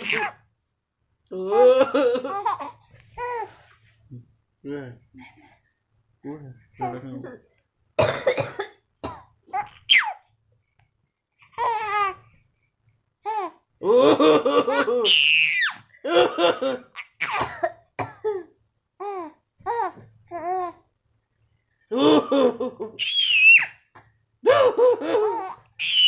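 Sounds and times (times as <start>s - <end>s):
baby laughing: 0.0s - 0.4s, 1.5s - 3.5s, 24.6s - 26.0s
baby squealing: 0.0s - 0.4s, 9.6s - 10.2s, 15.0s - 15.8s, 23.0s - 23.8s, 25.4s - 26.0s
man coughing: 8.0s - 9.2s.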